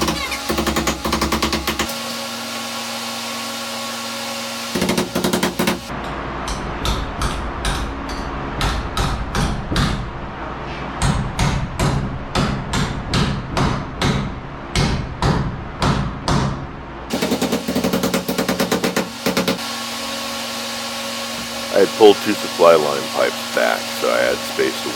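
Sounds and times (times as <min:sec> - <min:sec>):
hammer striking: 0:04.7 - 0:10.1, 0:11.0 - 0:19.6.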